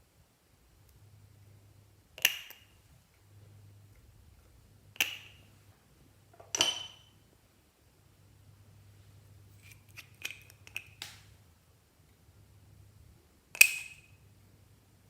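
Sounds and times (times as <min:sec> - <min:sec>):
hard objects clinking with ringing: 0:06.5 - 0:07.1.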